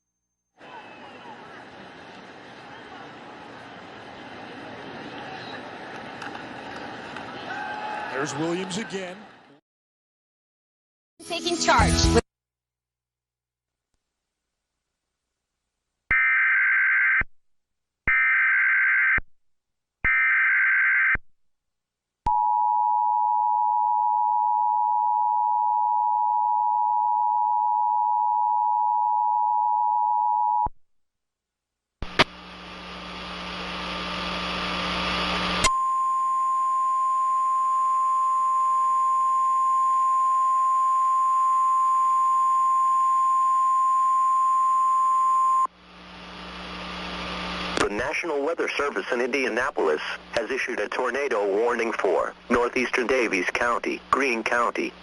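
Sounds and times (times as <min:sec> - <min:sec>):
broadcast hiss with low hum: 0:32.0 - 0:37.8, 0:45.7 - 0:55.0.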